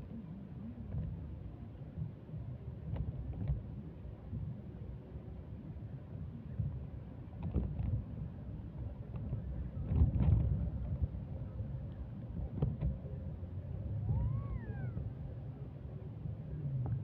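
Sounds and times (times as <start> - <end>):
wind buffeting microphone: 5.7 - 17.0.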